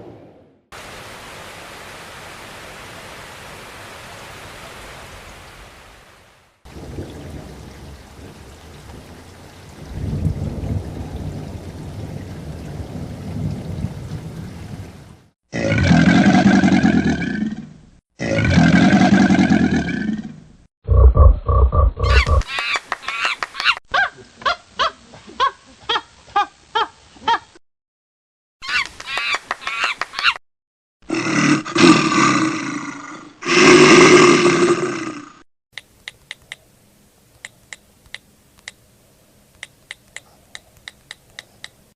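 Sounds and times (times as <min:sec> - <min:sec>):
animal rough roars: 0:15.5 - 0:20.4, 0:31.1 - 0:35.4.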